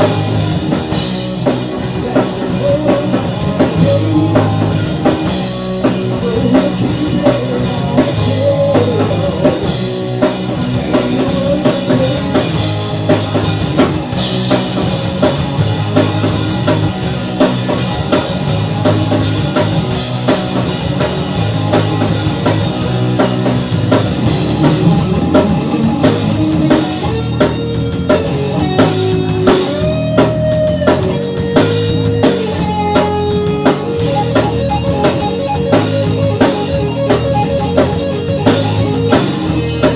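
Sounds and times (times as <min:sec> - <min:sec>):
rock music with drums and guitars: 0:00.0 - 0:39.9.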